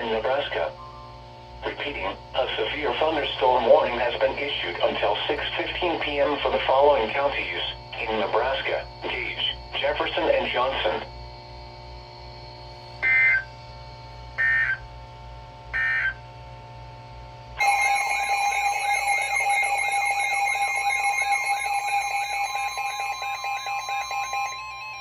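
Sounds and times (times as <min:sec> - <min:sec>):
shrill digital data bursts: 0:17.6 - 0:25.0.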